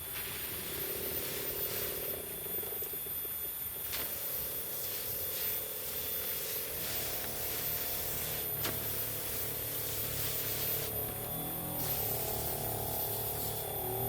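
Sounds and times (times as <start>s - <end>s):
steady hum: 0.0s - 14.0s
crop sprayer hissing: 3.8s - 14.0s.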